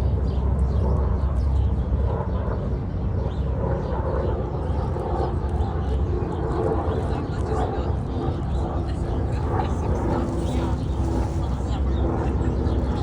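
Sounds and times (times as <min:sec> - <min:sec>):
faint murmur: 0:03.8 - 0:13.0.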